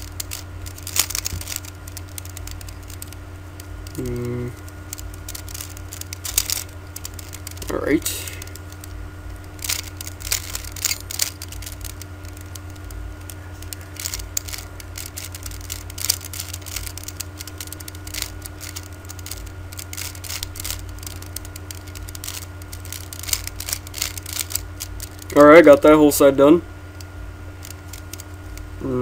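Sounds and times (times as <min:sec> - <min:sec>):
puzzle cube clicking: 0:00.0 - 0:26.3, 0:27.0 - 0:28.8
low electrical hum: 0:00.0 - 0:29.0.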